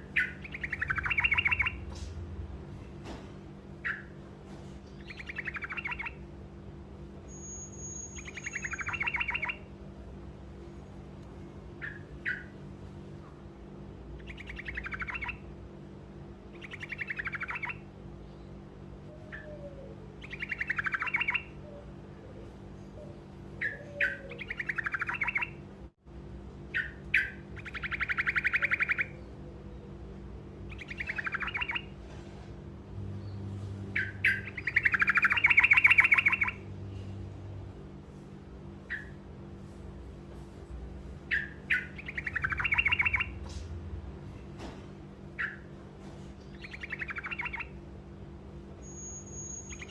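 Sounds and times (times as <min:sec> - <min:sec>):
bird singing rolling trills: 0:00.0 - 0:01.9, 0:03.7 - 0:04.2, 0:04.8 - 0:06.3, 0:07.2 - 0:09.9, 0:11.7 - 0:12.7, 0:14.1 - 0:15.8, 0:16.4 - 0:25.7, 0:26.6 - 0:32.0, 0:33.0 - 0:36.8, 0:38.8 - 0:39.2, 0:41.2 - 0:43.4, 0:45.2 - 0:45.7, 0:46.4 - 0:49.9
steady low hum: 0:00.0 - 0:49.9.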